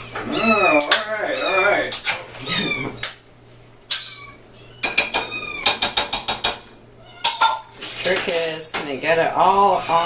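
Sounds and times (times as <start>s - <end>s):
kittens meowing: 0.0s - 3.2s, 3.9s - 6.0s, 7.0s - 7.6s
dishes and utensil clattering: 3.9s - 9.0s.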